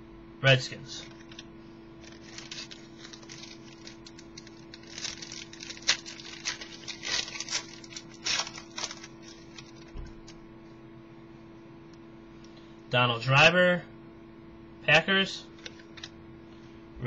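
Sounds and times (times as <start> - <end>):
cards rustling and flicking: 1.0 - 10.4.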